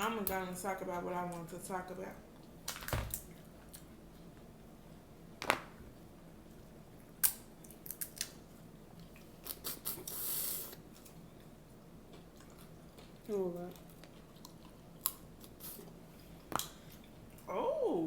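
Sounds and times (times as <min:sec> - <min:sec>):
seafood shells cracking: 0:07.2 - 0:08.4.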